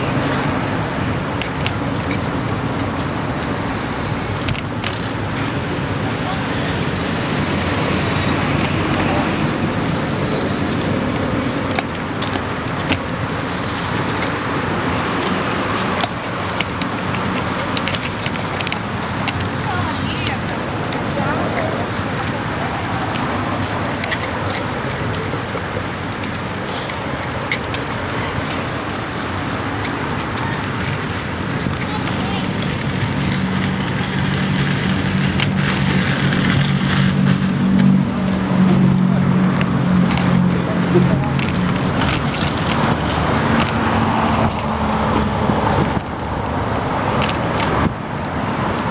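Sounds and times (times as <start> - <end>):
tyre and wind noise: 0.0 - 48.9
sharp clicks and knocks: 0.1 - 5.9, 10.7 - 22.4, 34.6 - 48.0.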